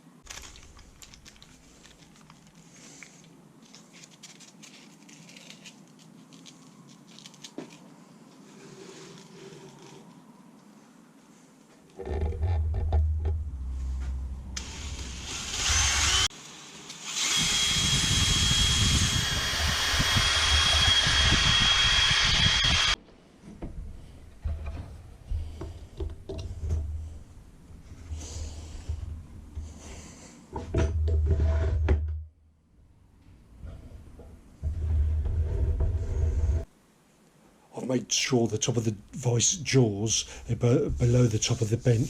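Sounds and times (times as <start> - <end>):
power drill boring into wood: 14.6 - 16.3, 17.0 - 23.0.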